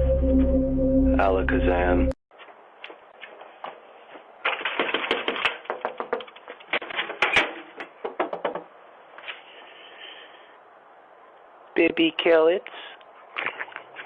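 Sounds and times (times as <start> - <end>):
clatter of clicks and knocks: 4.4 - 8.7.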